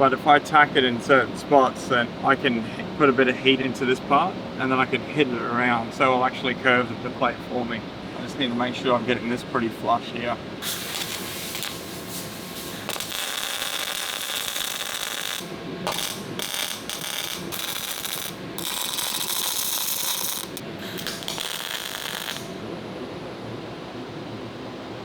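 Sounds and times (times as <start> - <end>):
welder crackling hiss: 10.6 - 22.6.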